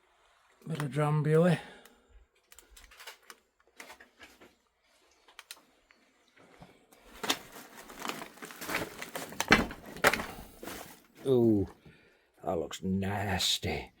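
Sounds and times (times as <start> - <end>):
papers rustling and crackling: 2.4 - 5.6, 6.8 - 11.3.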